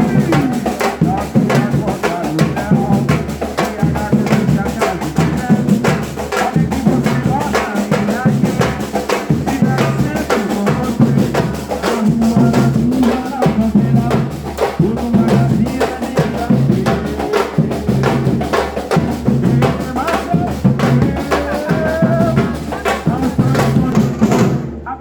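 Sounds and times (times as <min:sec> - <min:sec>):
group of drummers playing: 0:00.0 - 0:25.0
deep bass drums: 0:12.3 - 0:24.7.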